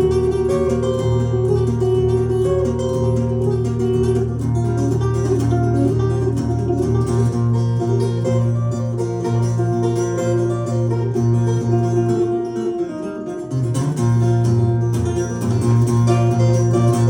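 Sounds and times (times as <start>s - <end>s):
acoustic guitar playing: 0.0s - 17.0s.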